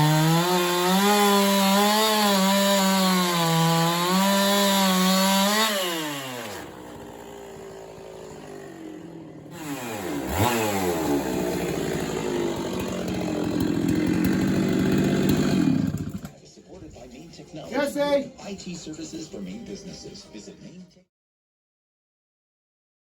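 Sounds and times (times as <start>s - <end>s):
chainsaw engine revving: 0.0s - 16.4s.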